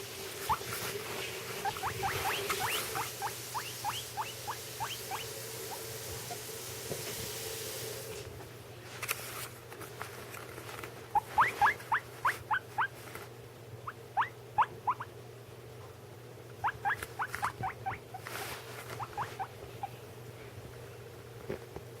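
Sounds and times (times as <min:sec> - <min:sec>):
guinea pig squeaking: 0:00.4 - 0:00.9, 0:01.5 - 0:06.5, 0:11.1 - 0:13.0, 0:13.8 - 0:15.1, 0:16.6 - 0:20.0.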